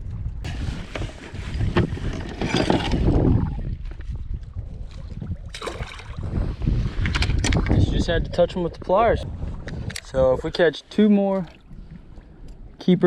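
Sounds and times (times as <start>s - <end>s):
wind buffeting microphone: 0.0s - 10.7s, 11.5s - 12.8s
water splashing: 4.4s - 7.8s.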